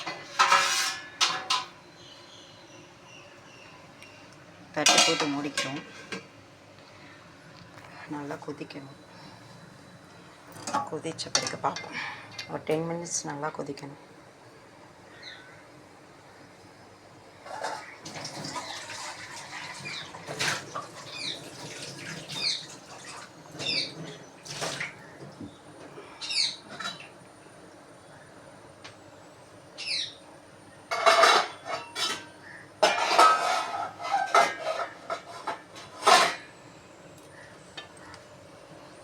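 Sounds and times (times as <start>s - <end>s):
dishes and utensils clattering: 0.0s - 1.8s, 4.8s - 6.3s, 17.4s - 21.0s, 26.7s - 27.1s, 30.9s - 36.6s.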